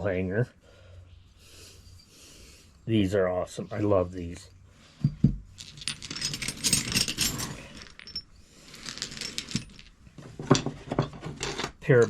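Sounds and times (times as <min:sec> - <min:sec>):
metal hand tools clinking: 0:05.6 - 0:09.9.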